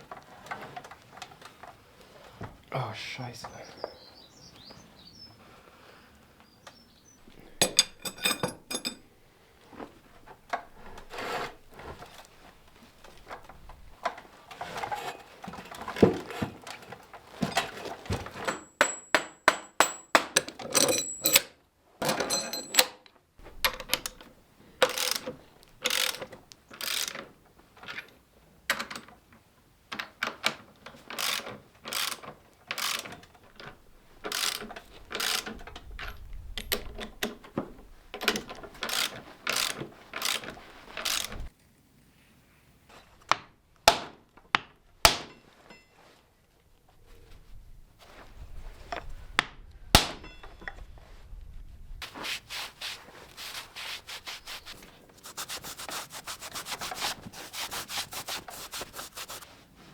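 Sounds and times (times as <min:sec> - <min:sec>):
ratchet clicking: 0:24.8 - 0:27.2, 0:31.2 - 0:32.2, 0:32.8 - 0:33.1, 0:34.3 - 0:35.5, 0:38.8 - 0:40.4, 0:41.0 - 0:41.5.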